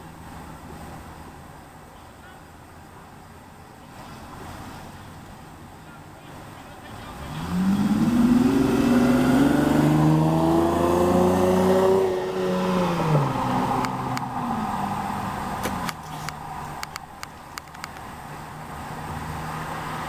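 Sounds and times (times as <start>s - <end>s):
vehicle engine revving: 6.8s - 16.8s.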